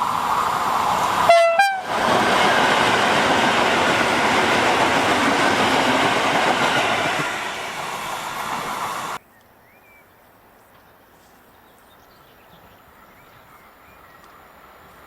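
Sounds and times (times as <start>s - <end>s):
train wheels rumbling on rail: 0.0s - 9.2s.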